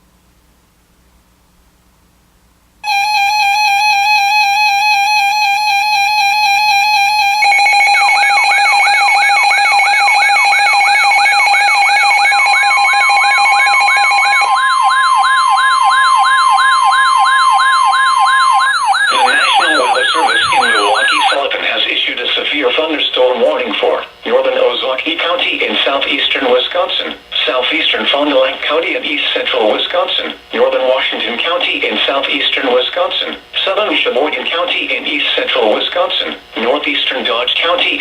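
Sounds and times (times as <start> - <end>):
single-pitched alarm tone: 2.8 - 21.4
siren sweeping up and down: 2.9 - 21.4
steady buzzy electronic tone: 18.8 - 21.5
broadcast voice: 19.1 - 38.0.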